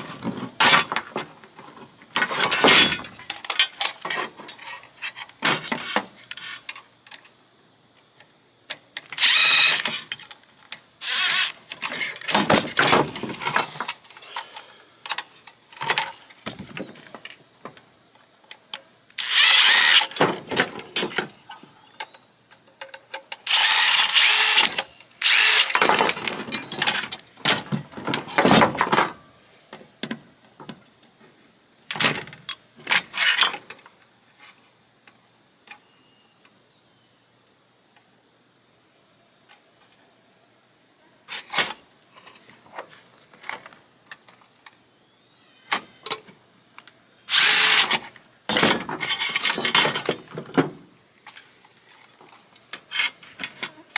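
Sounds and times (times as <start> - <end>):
crickets chirping: 0.0 - 53.9
metal parts clicking and knocking: 2.2 - 7.2, 8.7 - 14.0, 18.7 - 21.4, 22.8 - 27.6, 47.3 - 50.7
power drill whirring: 9.2 - 10.0, 11.0 - 11.6, 19.2 - 20.2, 23.5 - 25.8, 47.3 - 48.0.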